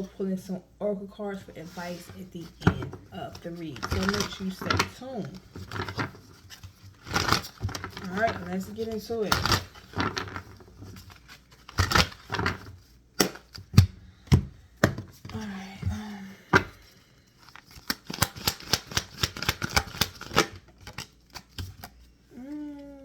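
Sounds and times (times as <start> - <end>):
cards being shuffled: 1.6 - 14.0, 16.5 - 23.0
rapid clicking of cards: 2.4 - 14.0, 16.6 - 22.1.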